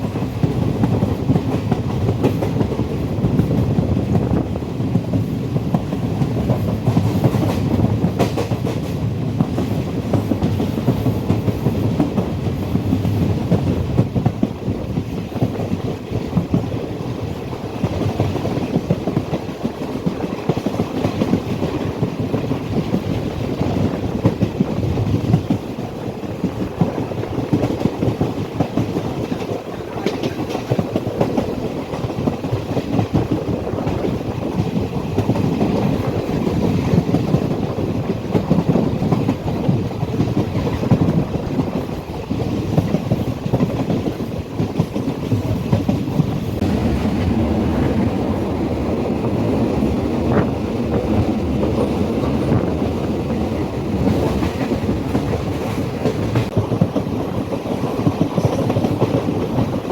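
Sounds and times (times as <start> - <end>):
train rumbling: 0.0 - 59.9.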